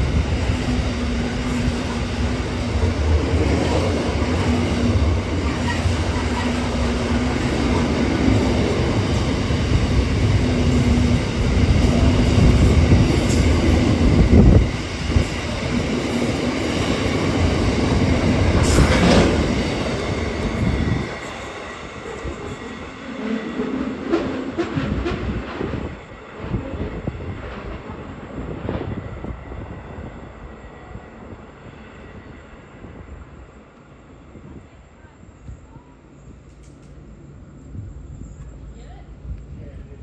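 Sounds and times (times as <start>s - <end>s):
freight train wheels clacking: 0.0s - 29.4s.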